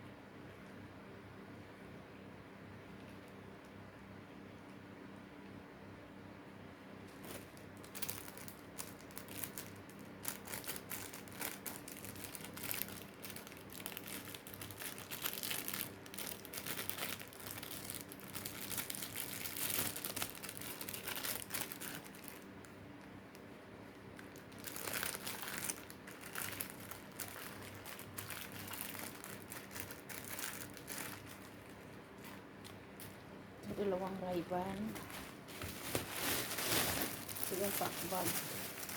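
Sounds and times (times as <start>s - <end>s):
packaging crinkling and rustling: 7.1s - 33.3s, 34.7s - 38.9s.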